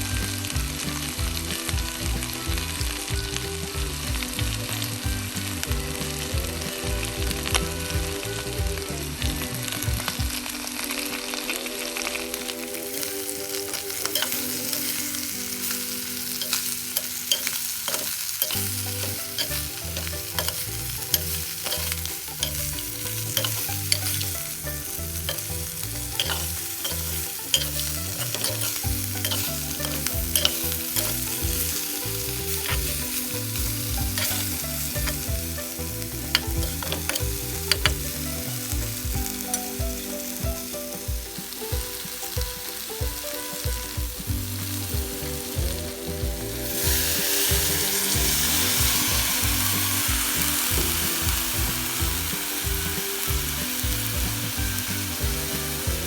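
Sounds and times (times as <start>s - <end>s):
chicken sizzling in a pan: 0.0s - 56.0s
spoon clicking against pan: 14.0s - 15.0s, 15.6s - 33.6s.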